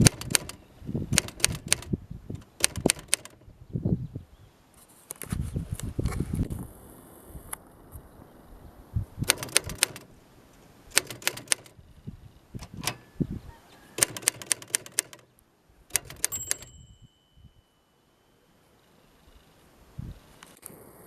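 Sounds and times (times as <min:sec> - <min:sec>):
typewriter key strikes: 0:00.0 - 0:01.9, 0:02.6 - 0:03.4, 0:09.2 - 0:10.1, 0:10.9 - 0:11.8, 0:14.0 - 0:15.3, 0:15.9 - 0:16.8
thin ringing tone: 0:16.3 - 0:19.6.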